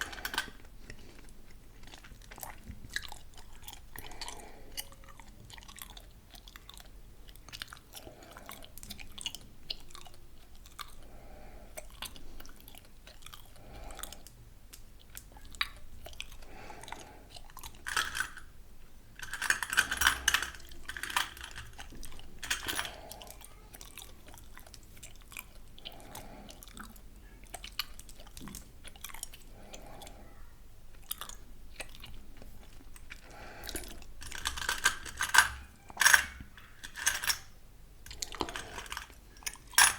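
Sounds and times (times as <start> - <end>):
wet gum chewing smacks: 23.0 - 30.2, 30.9 - 34.1.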